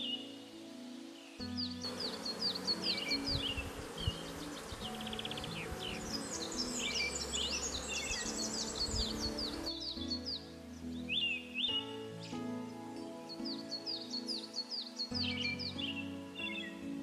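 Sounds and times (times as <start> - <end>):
birds chirping: 0.0 - 17.0
soft background music: 0.0 - 17.0
honeybees buzzing: 1.4 - 11.0.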